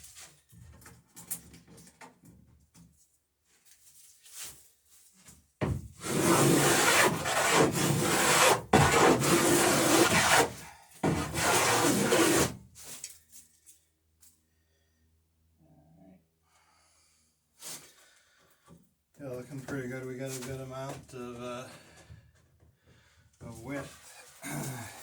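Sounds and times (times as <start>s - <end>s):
hand plane cutting wood: 6.0s - 12.6s.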